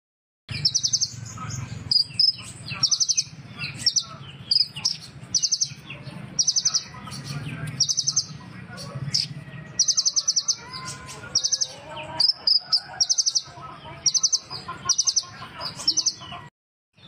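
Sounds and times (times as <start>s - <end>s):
bird singing high trills: 9.1s - 13.5s.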